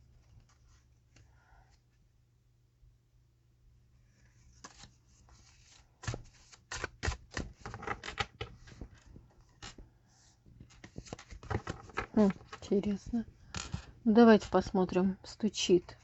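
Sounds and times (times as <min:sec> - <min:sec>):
faint card rustling: 0:04.1 - 0:14.7
cards snapping and slapping: 0:06.0 - 0:08.8.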